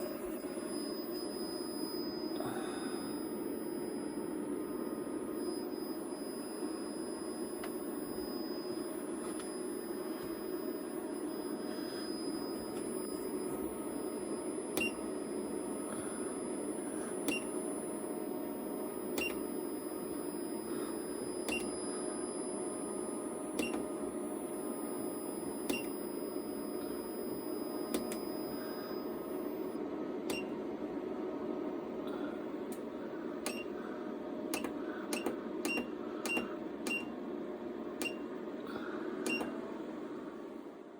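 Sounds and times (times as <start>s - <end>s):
high whistling chirps: 0.0s - 16.4s
faint high whine: 0.0s - 40.9s
inverter humming: 0.0s - 40.9s.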